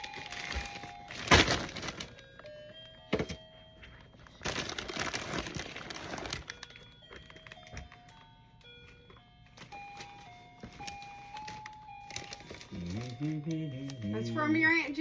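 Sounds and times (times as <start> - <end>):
paper rustling: 0.0 - 2.2, 4.2 - 7.9, 9.6 - 13.2
beeping electronic melody: 9.7 - 15.0.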